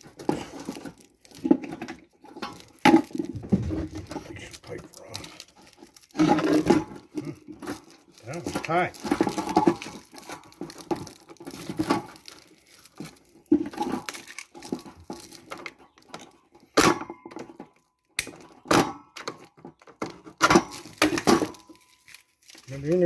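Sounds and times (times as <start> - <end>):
paper rustling: 2.3 - 15.6.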